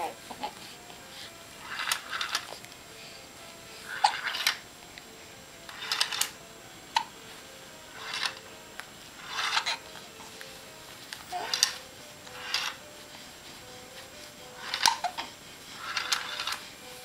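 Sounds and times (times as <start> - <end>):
crib mobile lullaby melody: 0.0 - 17.0
breathy rustling: 9.0 - 17.0.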